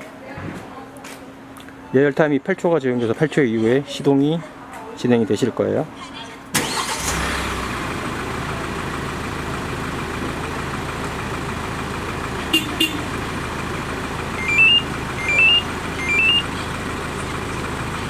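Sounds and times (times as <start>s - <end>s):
engine idling: 6.6s - 18.0s
rising electronic chirp: 14.4s - 16.5s.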